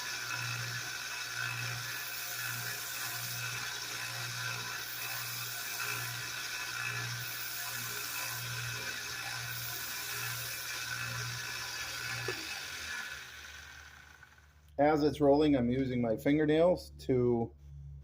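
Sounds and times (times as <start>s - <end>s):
belt sander hissing: 0.0s - 14.6s
low motor hum: 6.9s - 18.0s.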